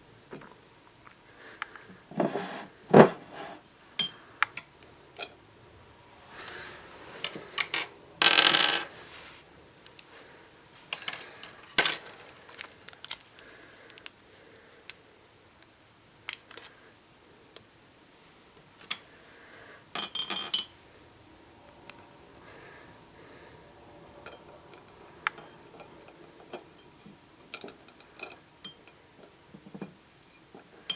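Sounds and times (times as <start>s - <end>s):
plastic pieces clinking on glass jar: 16.3s - 16.7s.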